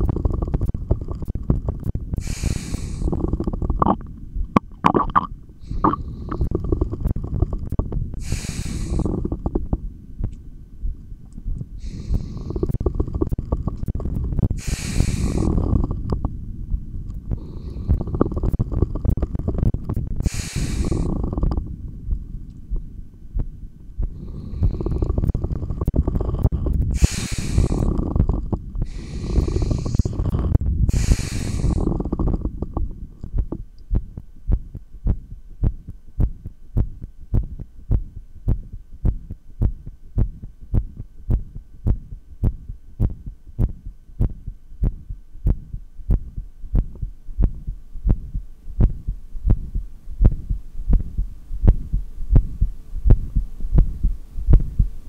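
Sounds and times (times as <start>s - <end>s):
heartbeat thumps: 0.0s - 5.0s, 5.8s - 55.0s
breaths through stethoscope: 2.2s - 3.8s, 5.6s - 9.6s, 11.8s - 16.1s, 17.3s - 19.5s, 20.2s - 21.6s, 24.1s - 32.8s.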